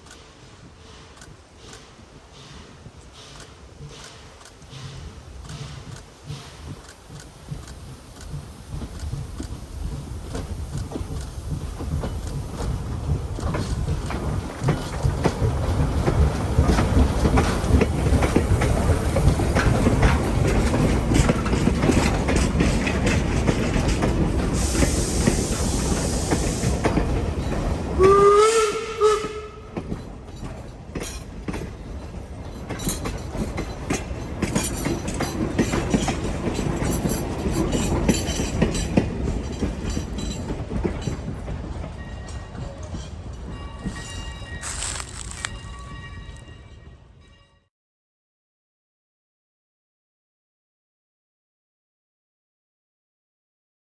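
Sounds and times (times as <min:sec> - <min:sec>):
wheels clattering on rails: 0:00.0 - 0:28.1, 0:29.2 - 0:46.8
steam train rumbling past: 0:00.0 - 0:47.1
steam hiss: 0:00.1 - 0:21.5, 0:22.7 - 0:29.3
steam whistle blast: 0:28.0 - 0:29.7.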